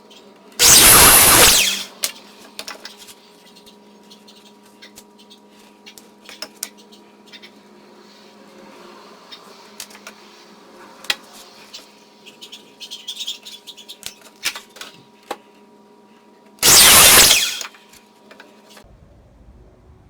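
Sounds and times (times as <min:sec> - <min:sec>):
loud burst of noise: 0:00.6 - 0:01.9, 0:16.6 - 0:17.7.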